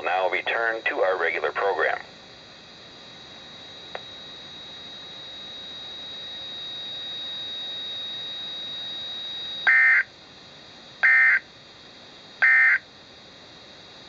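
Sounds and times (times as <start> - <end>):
digital data tones: 0.0 - 2.1
radio static hiss: 0.0 - 6.0
faint high whine: 0.0 - 14.0
click: 3.9 - 4.1.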